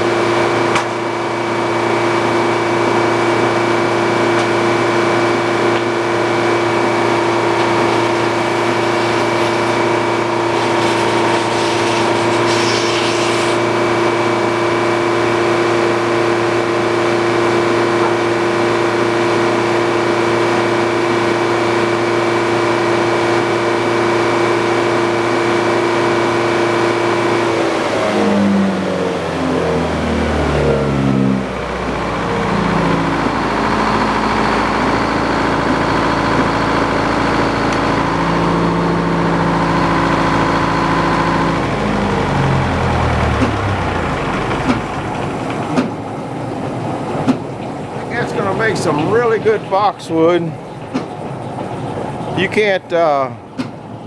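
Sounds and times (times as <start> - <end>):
sawmill engine running: 0.0 - 54.0
saw cutting: 6.2 - 16.4.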